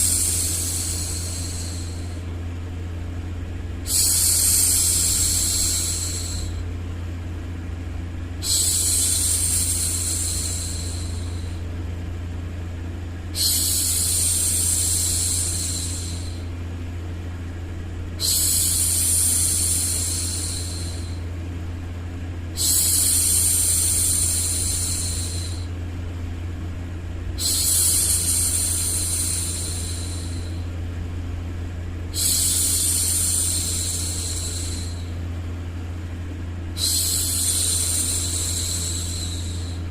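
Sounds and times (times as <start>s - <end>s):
low white-noise hum: 0.0s - 39.9s
woman shushing: 13.4s - 16.4s, 36.8s - 39.9s.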